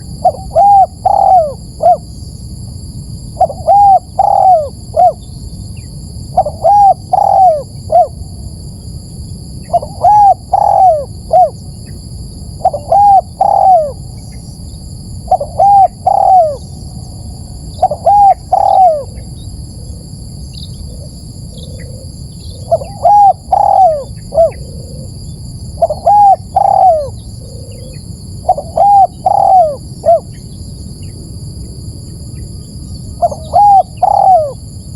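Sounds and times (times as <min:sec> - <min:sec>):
dove cooing: 0:00.0 - 0:02.1, 0:03.4 - 0:05.3, 0:06.3 - 0:08.2, 0:09.7 - 0:11.7, 0:12.6 - 0:14.0, 0:15.3 - 0:16.7, 0:17.7 - 0:20.0, 0:20.9 - 0:25.2, 0:25.8 - 0:30.4, 0:33.2 - 0:34.7.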